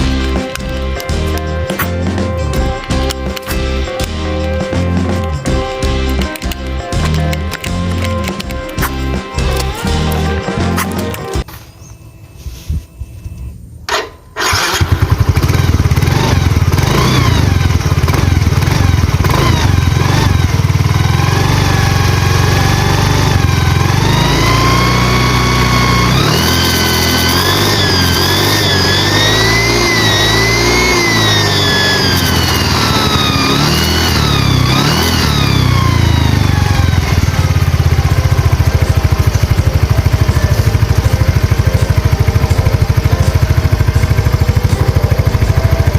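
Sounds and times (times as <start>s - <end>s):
scooter engine revving: 0.0s - 11.5s, 13.9s - 45.9s
whistling engine whine: 7.6s - 45.9s.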